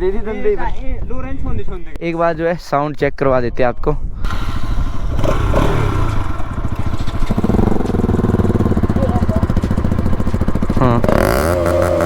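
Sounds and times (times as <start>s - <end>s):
motorcycle engine idling: 4.3s - 12.0s.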